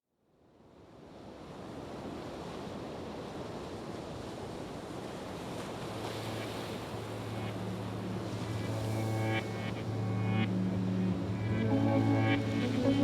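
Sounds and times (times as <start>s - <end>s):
steady rushing noise: 6.3s - 13.0s
low musical tones: 6.8s - 13.0s.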